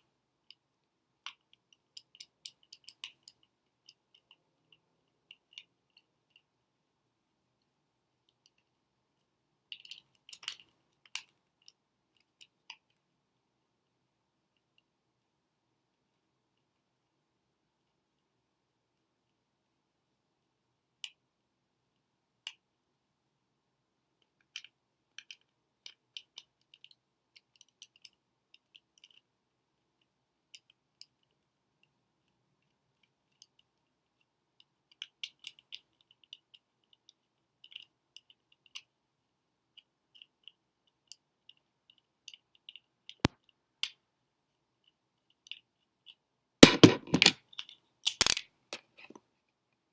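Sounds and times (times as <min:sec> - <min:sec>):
plastic parts clicking and tapping: 0:00.4 - 0:06.5, 0:08.3 - 0:13.1, 0:24.2 - 0:29.3, 0:30.0 - 0:39.0, 0:44.8 - 0:49.3.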